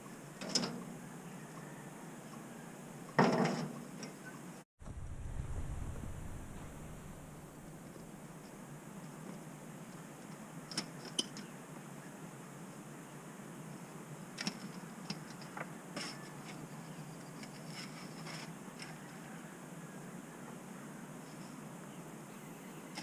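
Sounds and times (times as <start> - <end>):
low background hum: 4.8 - 10.7.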